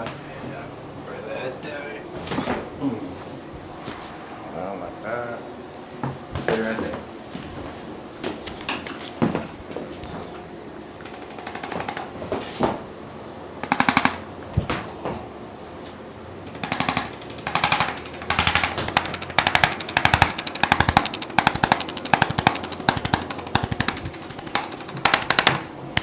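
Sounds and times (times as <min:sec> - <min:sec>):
rapid percussive taps: 0:11.0 - 0:12.2, 0:13.6 - 0:14.3, 0:16.6 - 0:26.0.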